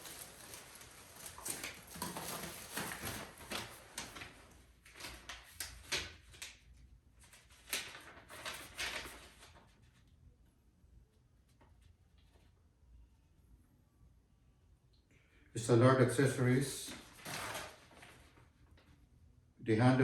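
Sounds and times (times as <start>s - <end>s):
cardboard and plastic rustling: 0.0s - 6.5s, 7.2s - 9.7s, 16.8s - 18.5s.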